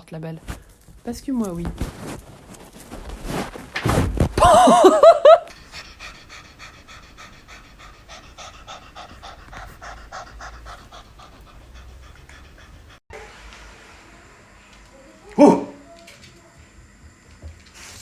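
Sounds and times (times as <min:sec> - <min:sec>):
dog panting: 0:05.5 - 0:13.0.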